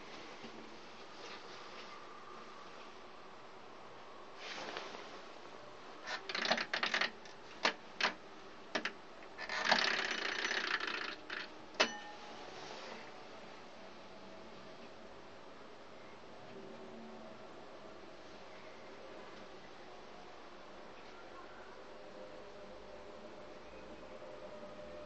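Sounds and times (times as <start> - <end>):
faint background hiss: 0.0 - 25.0.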